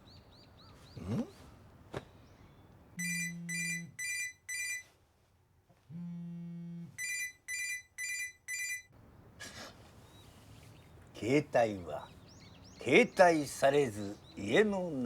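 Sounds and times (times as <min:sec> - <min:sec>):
phone vibration buzz: 0:03.0 - 0:04.8, 0:05.9 - 0:07.3
phone ringing with short beeps: 0:03.0 - 0:04.9, 0:07.0 - 0:08.9.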